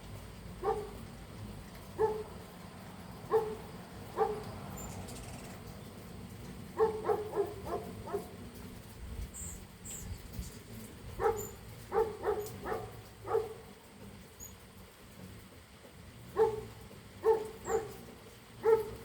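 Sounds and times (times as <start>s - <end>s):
hummingbird chirps: 0.0s - 19.0s
dog yapping: 0.6s - 0.9s, 2.0s - 2.3s, 3.3s - 3.6s, 4.2s - 4.5s, 6.8s - 8.3s, 11.2s - 13.6s, 16.4s - 18.0s, 18.6s - 19.0s.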